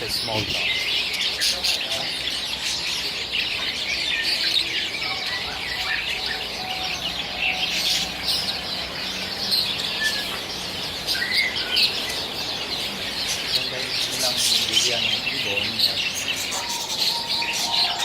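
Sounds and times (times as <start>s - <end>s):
caged birds chirping: 0.0s - 18.0s.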